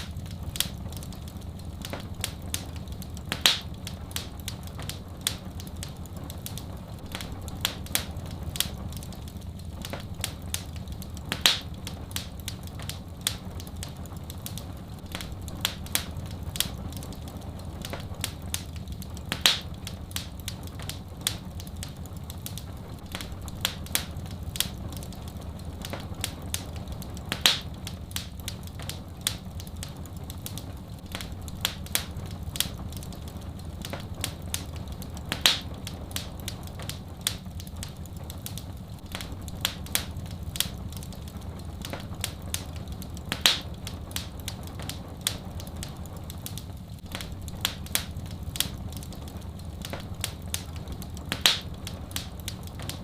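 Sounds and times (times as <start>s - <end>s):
low fire rumble: 0.0s - 53.0s
wood fire crackling and popping: 0.0s - 53.0s
loud fire pop: 3.4s - 3.8s, 19.4s - 19.8s, 27.4s - 27.8s, 35.4s - 35.8s.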